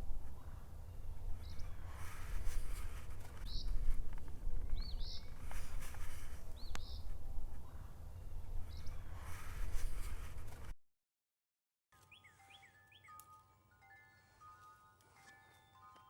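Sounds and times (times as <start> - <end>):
steady low rumble: 0.0 - 10.7
songbird calling: 0.2 - 3.8, 4.6 - 9.1, 12.0 - 13.3.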